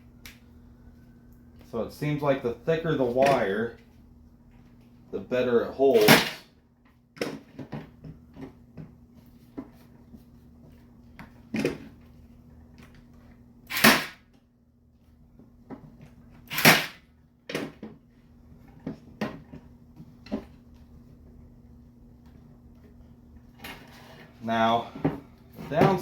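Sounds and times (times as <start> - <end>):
cable stapler firing: 13.7 - 14.2, 16.5 - 17.0.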